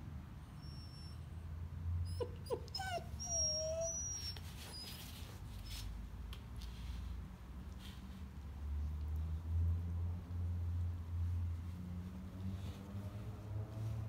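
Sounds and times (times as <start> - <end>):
puppy whimpering: 0.6 - 1.3, 2.0 - 5.9.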